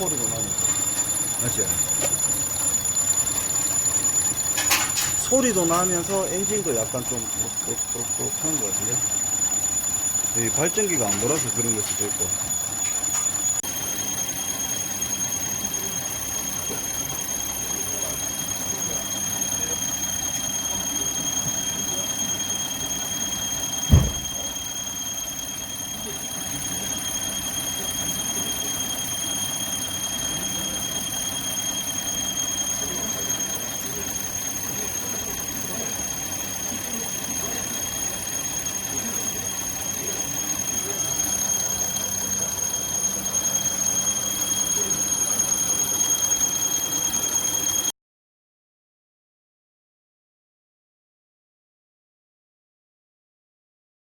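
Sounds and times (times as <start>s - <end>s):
high-pitched whine: 0.0s - 47.9s
thump: 23.9s - 24.4s.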